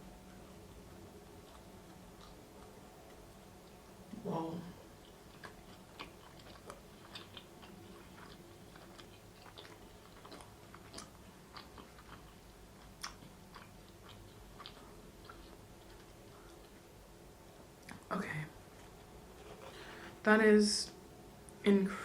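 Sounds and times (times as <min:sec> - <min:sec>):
chewing with mouth clicks: 0:00.8 - 0:03.9, 0:04.8 - 0:16.9.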